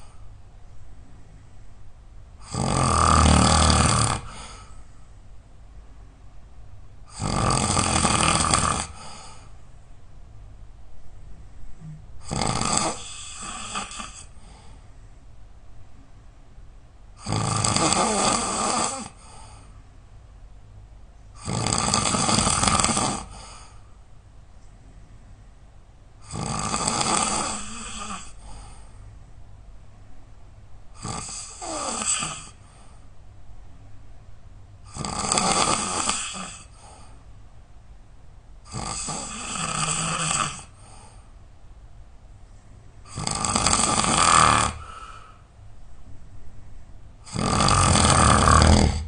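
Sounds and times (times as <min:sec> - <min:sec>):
quiet breathing: 0:00.0 - 0:02.5, 0:04.0 - 0:05.5, 0:08.8 - 0:10.0, 0:10.9 - 0:16.2, 0:18.4 - 0:20.4, 0:22.6 - 0:26.3, 0:27.3 - 0:30.1, 0:30.9 - 0:33.4, 0:35.8 - 0:37.6, 0:38.6 - 0:41.6, 0:42.2 - 0:49.0
person snoring loudly: 0:02.4 - 0:04.7, 0:07.1 - 0:09.2, 0:12.2 - 0:14.3, 0:17.2 - 0:19.2, 0:21.4 - 0:23.5, 0:26.2 - 0:28.4, 0:31.0 - 0:32.6, 0:34.9 - 0:36.8, 0:38.7 - 0:40.8, 0:43.1 - 0:45.3, 0:47.2 - 0:49.0.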